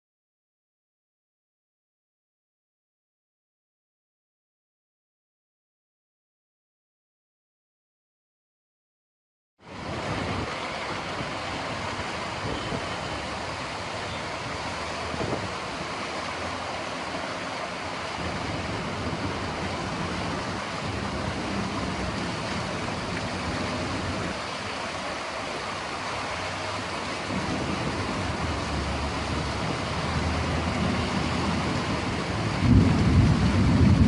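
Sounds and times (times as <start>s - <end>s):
floodwater rushing: 9.6s - 34.0s
heavy low rumble: 27.2s - 34.0s.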